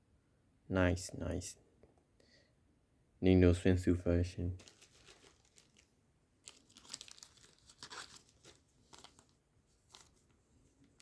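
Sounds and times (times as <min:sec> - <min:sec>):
trading cards rustling: 0:04.6 - 0:11.0.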